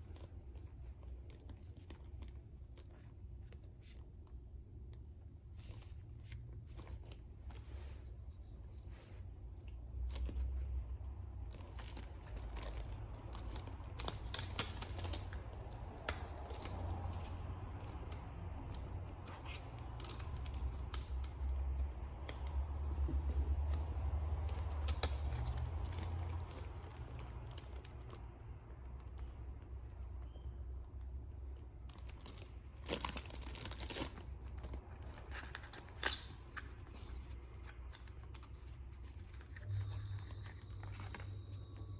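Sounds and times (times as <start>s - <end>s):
paper and plastic rustling: 5.5s - 28.2s, 31.8s - 41.9s.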